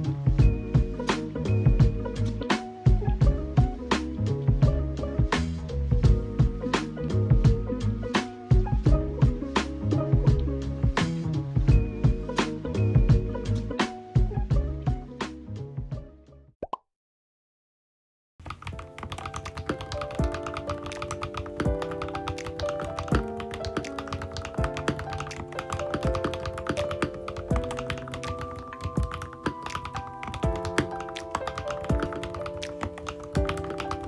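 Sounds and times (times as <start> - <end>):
background music: 0.0 - 16.4, 18.4 - 34.0
mechanical keyboard typing: 18.4 - 34.0.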